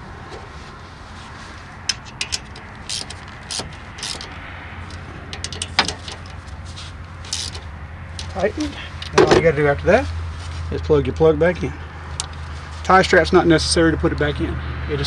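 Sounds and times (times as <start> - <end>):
ratchet clicking metallically: 1.9 - 9.2, 12.1 - 12.5.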